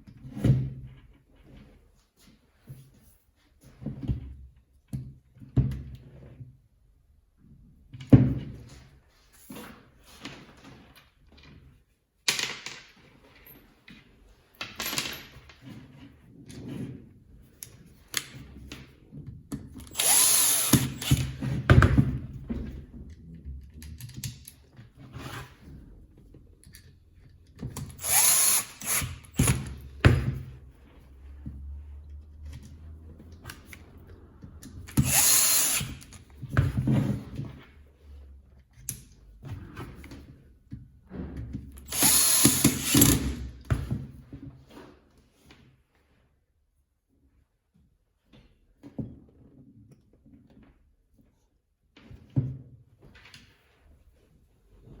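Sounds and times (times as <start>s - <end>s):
knocks and clacks of tools: 12.3s - 25.0s, 26.2s - 37.8s, 38.6s - 44.9s
power tool motor spinning: 19.8s - 21.5s, 27.8s - 29.8s, 34.9s - 36.2s, 41.8s - 43.4s.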